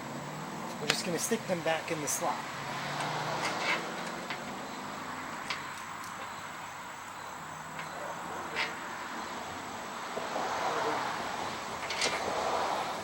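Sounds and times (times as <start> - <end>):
outdoor background hum: 0.0 - 13.0
metal parts clicking and tapping: 3.4 - 4.6, 5.4 - 6.2.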